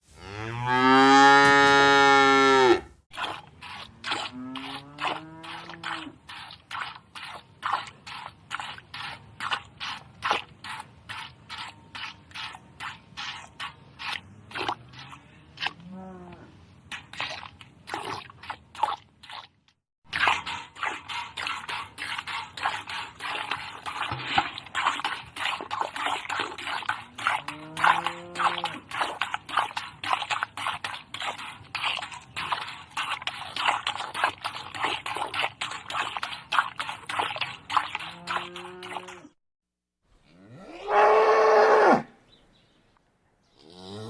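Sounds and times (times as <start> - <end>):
cow mooing quietly: 0.1 - 3.0, 4.1 - 6.2, 14.8 - 16.6, 27.3 - 28.8, 38.0 - 39.3, 40.2 - 42.2
milk squirting: 3.2 - 5.6, 6.3 - 15.7, 20.1 - 39.0.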